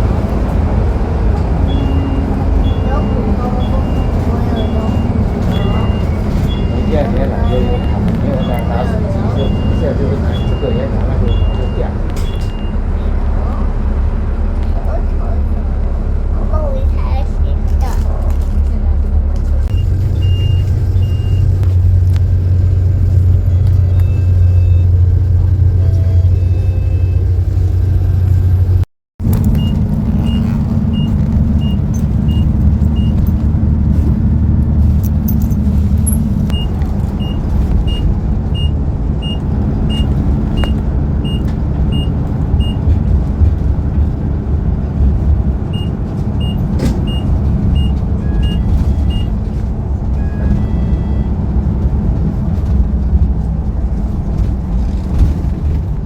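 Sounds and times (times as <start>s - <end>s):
bus engine drone: 0.0s - 56.0s
road rumble: 0.0s - 56.0s.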